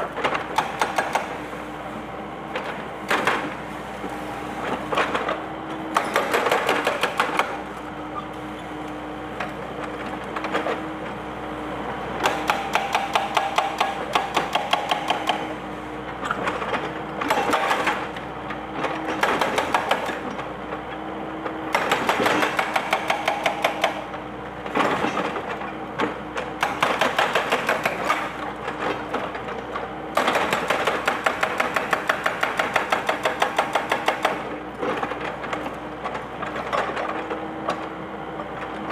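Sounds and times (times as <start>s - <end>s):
excavator engine hum: 0.0s - 38.9s
hydraulic breaker hammering concrete: 0.1s - 1.4s, 2.6s - 3.6s, 4.8s - 7.7s, 12.2s - 15.6s, 16.2s - 18.2s, 18.8s - 20.4s, 21.6s - 29.4s, 30.1s - 38.6s.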